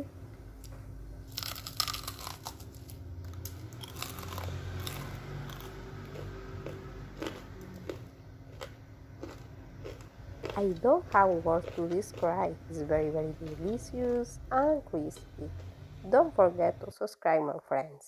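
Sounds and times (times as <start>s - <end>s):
crunching fried chicken: 1.2s - 14.2s
chewing: 3.4s - 12.4s.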